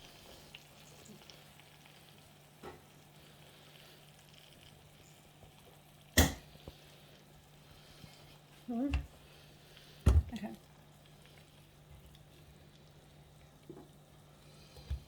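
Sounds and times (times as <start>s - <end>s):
faint sizzling in frying pan: 0.0s - 15.0s.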